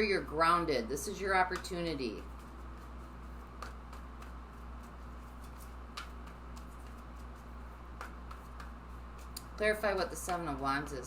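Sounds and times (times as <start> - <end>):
steady low hum: 0.0 - 11.0
cards clicking and tapping: 1.5 - 10.6.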